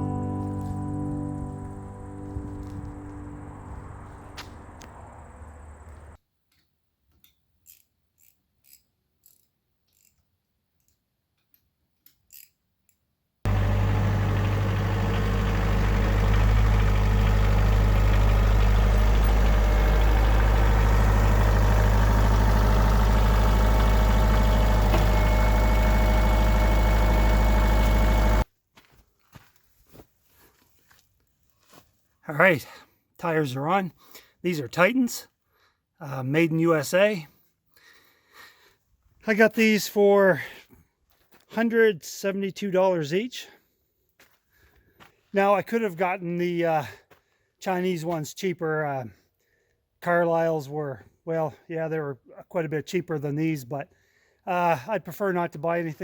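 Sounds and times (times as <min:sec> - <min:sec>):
engine running steadily: 0:13.5 - 0:28.4.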